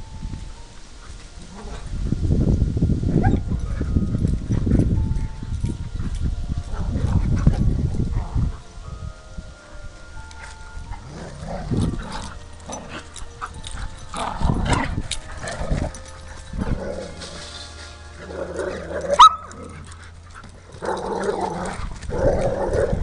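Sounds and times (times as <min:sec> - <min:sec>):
dogs barking: 0:18.5 - 0:23.0
dog yelping: 0:19.1 - 0:19.5.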